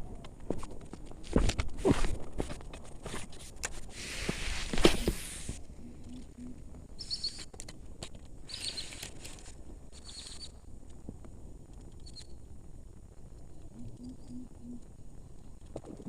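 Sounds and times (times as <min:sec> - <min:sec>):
low hooting notes: 0:05.6 - 0:06.9
bird chirping: 0:05.8 - 0:07.5, 0:08.5 - 0:09.0, 0:10.0 - 0:10.6, 0:13.7 - 0:14.8
faint clicks: 0:05.8 - 0:12.5.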